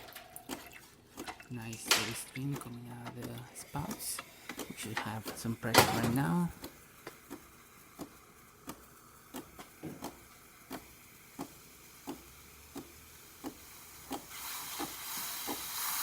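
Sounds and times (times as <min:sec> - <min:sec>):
espresso machine ticking: 0:01.2 - 0:16.0
steam wand hissing: 0:03.6 - 0:16.0.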